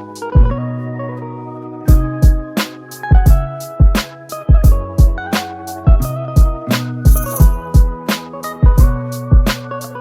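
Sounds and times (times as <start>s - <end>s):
drum beat: 3.1s - 5.2s, 6.4s - 8.0s.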